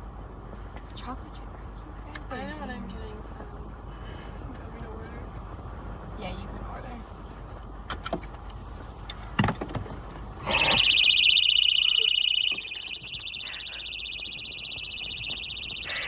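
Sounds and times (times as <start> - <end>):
safety alarm pulsing high tone: 10.5 - 16.0.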